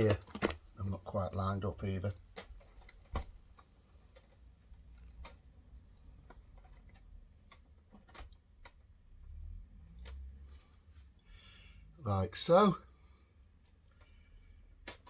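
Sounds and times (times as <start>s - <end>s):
small parts clicking and tapping: 2.0s - 9.0s.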